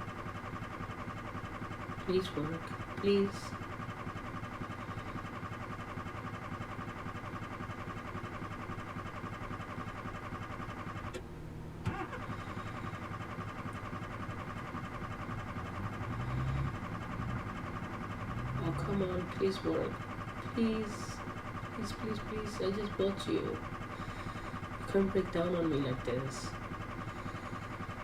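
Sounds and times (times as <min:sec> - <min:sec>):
car starter cranking engine: 0:09.7 - 0:28.0.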